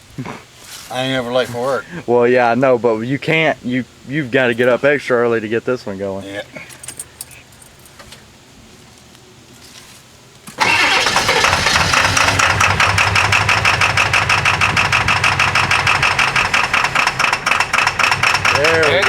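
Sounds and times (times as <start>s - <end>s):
diesel engine cranking on starter: 10.5s - 19.0s.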